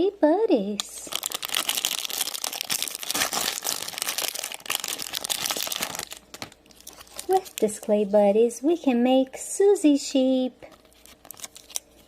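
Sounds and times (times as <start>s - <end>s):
plastic packaging crinkling and tearing: 1.0s - 7.9s, 10.7s - 12.0s.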